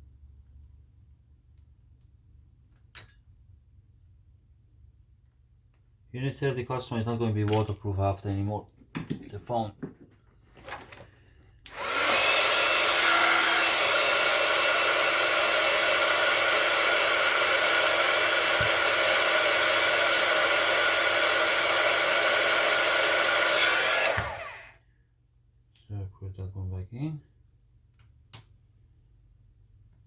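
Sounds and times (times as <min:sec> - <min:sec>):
electric air blower rushing: 0:11.7 - 0:24.8
motor whine: 0:11.7 - 0:24.8.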